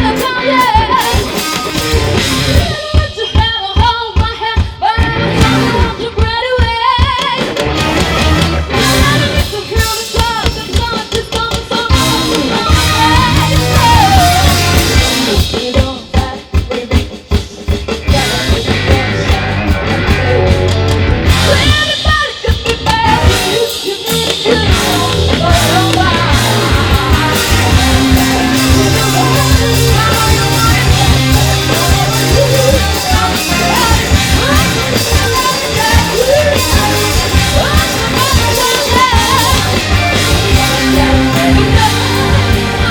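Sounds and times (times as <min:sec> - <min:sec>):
distorted electric guitars: 0:00.0 - 0:03.4, 0:04.8 - 0:15.9, 0:17.7 - 0:42.9
drum kit: 0:00.0 - 0:42.9
rock band playing live: 0:00.0 - 0:42.9
person singing: 0:08.7 - 0:17.4, 0:18.1 - 0:42.9.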